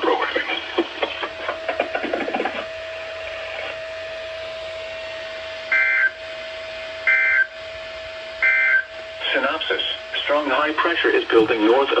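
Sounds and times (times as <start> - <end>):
two-tone digital squawks: 5.7 - 6.2, 7.1 - 7.5, 8.4 - 8.9.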